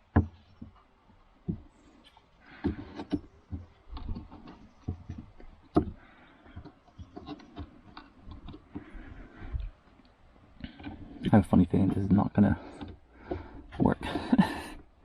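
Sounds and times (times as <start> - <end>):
wooden boards knocking and clicking: 0.0 - 1.7, 2.5 - 9.7, 10.6 - 14.9.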